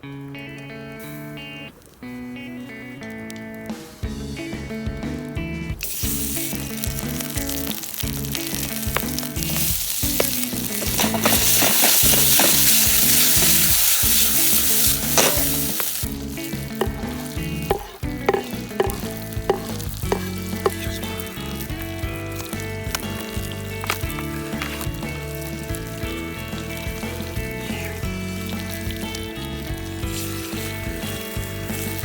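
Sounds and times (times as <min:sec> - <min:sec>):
food sizzling in a pan: 0:05.8 - 0:32.0
utensil tapping and scraping pan: 0:08.8 - 0:21.2.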